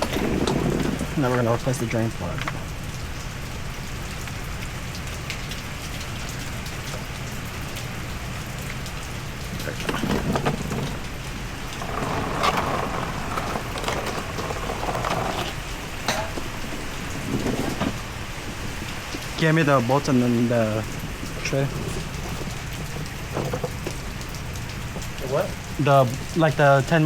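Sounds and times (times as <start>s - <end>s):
light clicks and knocks: 9.4s - 26.9s.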